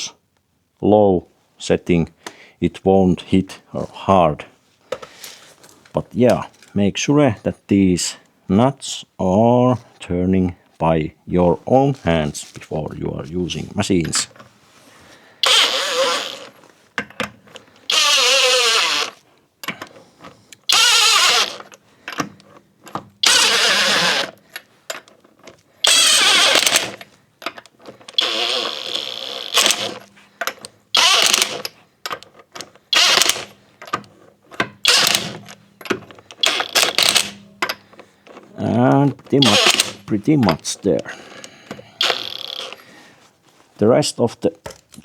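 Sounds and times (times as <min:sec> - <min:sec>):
impact wrench spinning lug nuts: 0:15.4 - 0:16.6, 0:17.9 - 0:19.2, 0:20.6 - 0:22.3, 0:23.2 - 0:24.4, 0:25.8 - 0:27.0, 0:28.1 - 0:30.1, 0:31.0 - 0:31.8, 0:32.9 - 0:33.6, 0:34.8 - 0:37.8, 0:39.4 - 0:40.2, 0:42.0 - 0:42.8.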